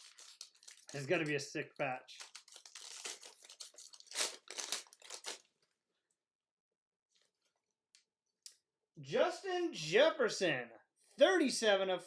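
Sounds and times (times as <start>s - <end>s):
cardboard packaging crinkling: 0.0s - 5.6s.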